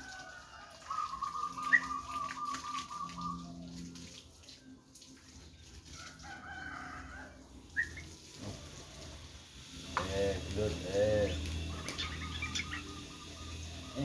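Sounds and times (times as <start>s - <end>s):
rooster crowing: 6.0s - 7.5s.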